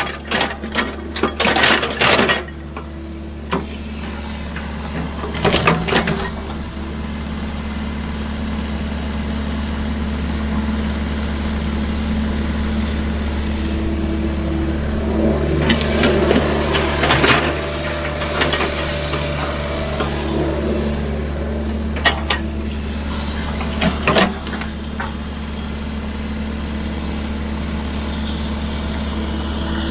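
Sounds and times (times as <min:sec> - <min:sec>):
excavator diesel engine running: 0:00.0 - 0:29.9
metal clanks and knocks: 0:21.9 - 0:25.2.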